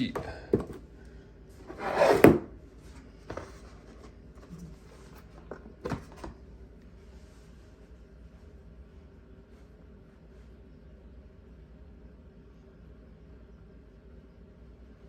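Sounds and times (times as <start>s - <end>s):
faint room noise: 0.0s - 15.0s
rasping scrape: 1.6s - 2.5s.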